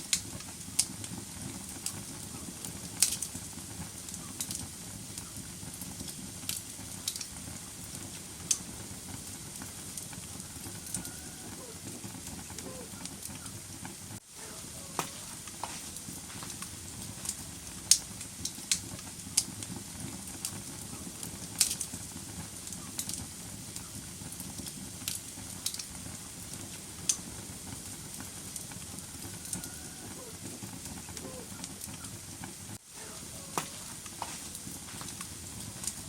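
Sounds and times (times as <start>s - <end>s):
low fire hiss: 0.0s - 36.0s
wood fire crackling and popping: 0.0s - 36.0s.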